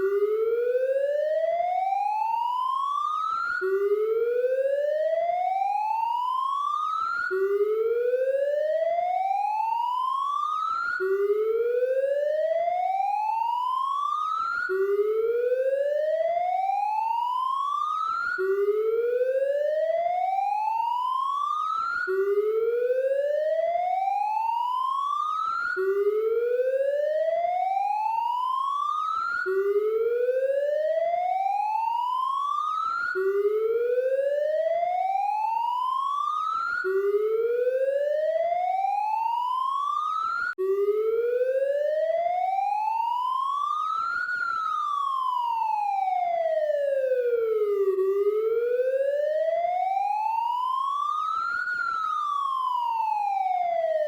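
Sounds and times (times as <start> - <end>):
police siren wailing: 0.0 - 54.0.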